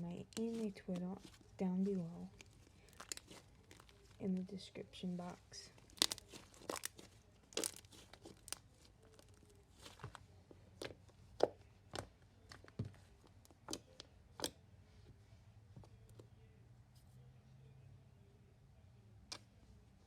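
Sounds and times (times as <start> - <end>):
slime sticky pops and crackles: 2.4 - 4.2, 5.8 - 10.2.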